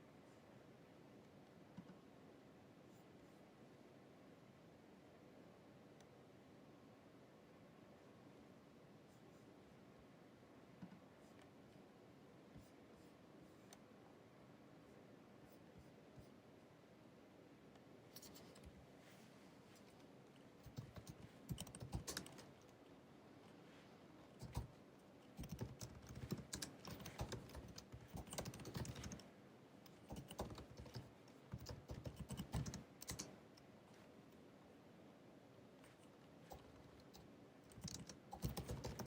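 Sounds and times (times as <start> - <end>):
laptop keyboard typing: 20.6 - 22.6, 24.4 - 33.4, 36.4 - 39.0.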